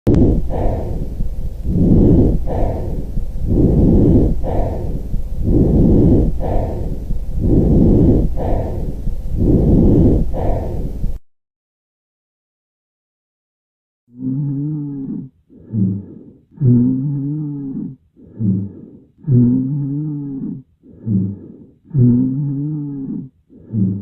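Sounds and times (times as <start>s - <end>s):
breathing through stethoscope: 0.1s - 11.2s, 14.3s - 24.0s
steady low hum: 0.1s - 11.2s.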